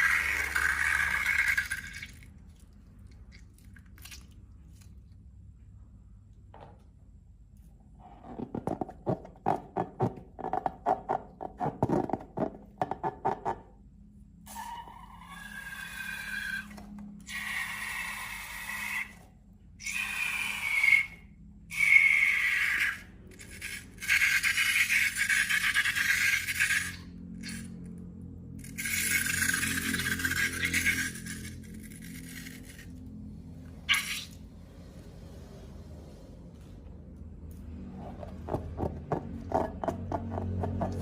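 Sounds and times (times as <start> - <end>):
air squealing from balloon neck: 14.5 - 27.7, 28.7 - 32.7, 33.8 - 34.4.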